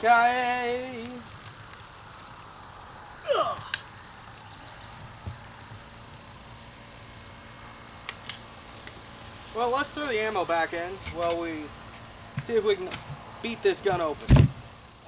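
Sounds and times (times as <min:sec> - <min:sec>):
crickets chirping: 0:00.0 - 0:15.0
sharp click: 0:08.0 - 0:09.0
dull thud: 0:13.8 - 0:14.7.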